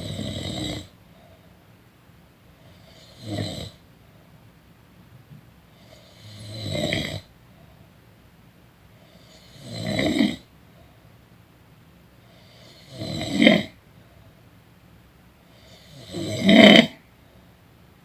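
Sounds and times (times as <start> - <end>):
person snoring: 0.0 - 0.9, 2.7 - 3.8, 5.8 - 7.3, 9.1 - 10.4, 12.5 - 13.8, 15.6 - 17.0.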